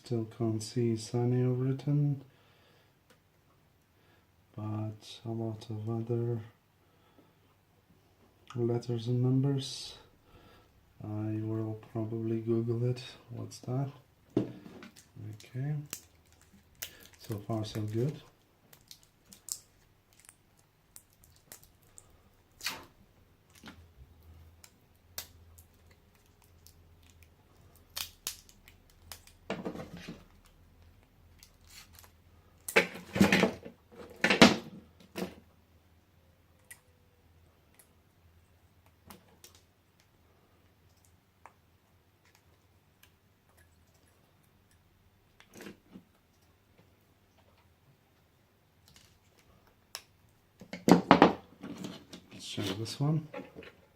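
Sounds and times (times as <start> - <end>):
knocks and scrapes: 51.2 - 53.8.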